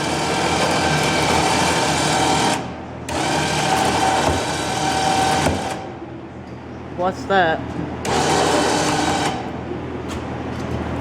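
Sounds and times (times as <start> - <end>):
elevator motor whirring: 0.0 - 6.0, 8.0 - 9.6.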